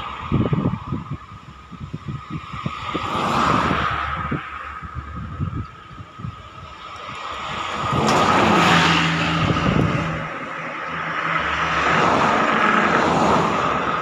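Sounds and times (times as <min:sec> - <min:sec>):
buses passing: 0:00.0 - 0:14.0.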